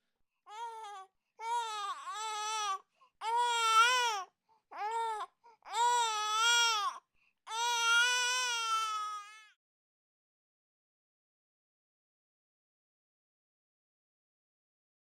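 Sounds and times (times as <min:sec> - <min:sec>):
infant crying: 0:00.5 - 0:09.6.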